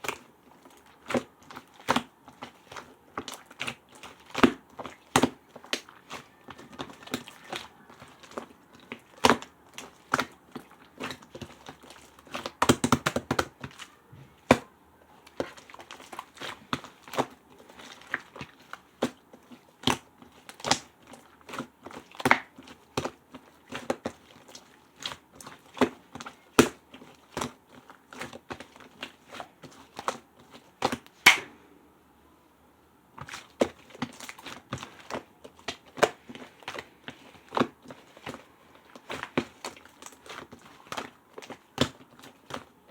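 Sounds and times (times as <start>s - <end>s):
slime squishing: 0.0s - 31.6s, 33.0s - 42.9s
slime clicking and popping: 21.5s - 24.0s, 30.8s - 31.6s.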